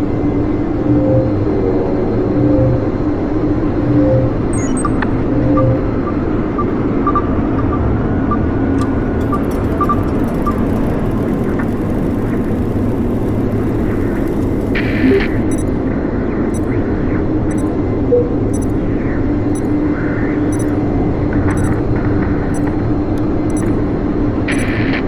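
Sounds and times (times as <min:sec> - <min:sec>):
short electronic beeps: 0:04.0 - 0:15.8, 0:16.5 - 0:16.8, 0:17.5 - 0:18.8, 0:19.5 - 0:19.8, 0:20.4 - 0:20.8, 0:21.4 - 0:22.8, 0:23.5 - 0:23.8, 0:24.5 - 0:25.0
bright electronic burst: 0:08.8 - 0:15.8.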